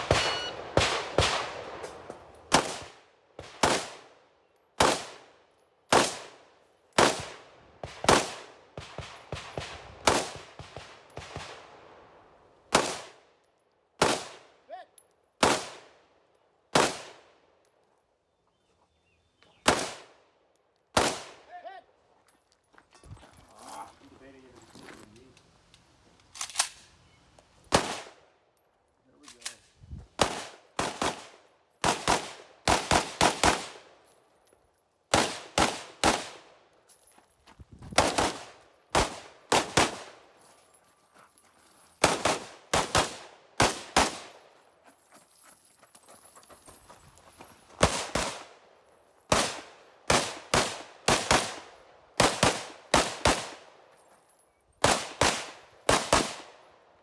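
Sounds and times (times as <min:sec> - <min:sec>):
rifle shots with echo: 0:00.0 - 0:04.2, 0:04.8 - 0:05.3, 0:05.9 - 0:13.2, 0:14.0 - 0:14.6, 0:15.4 - 0:16.0, 0:16.7 - 0:17.4, 0:19.6 - 0:20.2, 0:21.0 - 0:21.5, 0:27.7 - 0:28.2, 0:30.2 - 0:34.0, 0:35.1 - 0:36.6, 0:38.0 - 0:40.2, 0:42.0 - 0:44.6, 0:47.8 - 0:48.7, 0:49.3 - 0:53.8, 0:54.8 - 0:56.7.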